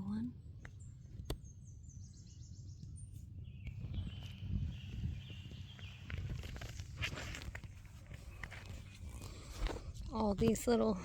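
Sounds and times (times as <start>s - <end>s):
bird singing trills: 0.0s - 6.3s.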